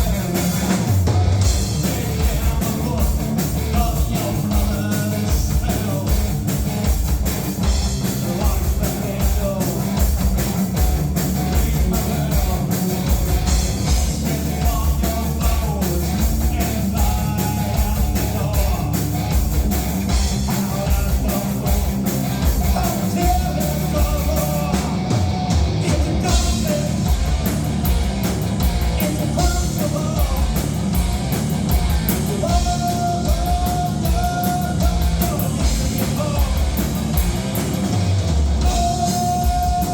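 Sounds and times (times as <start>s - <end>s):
drum kit beat: 0.0s - 39.9s
live rock band playing: 0.0s - 39.9s
person singing: 1.7s - 6.3s, 8.2s - 10.0s, 11.4s - 12.8s, 14.2s - 19.2s, 20.4s - 22.0s, 22.6s - 25.1s, 25.8s - 27.2s, 29.0s - 30.6s, 32.2s - 37.0s, 38.6s - 39.9s.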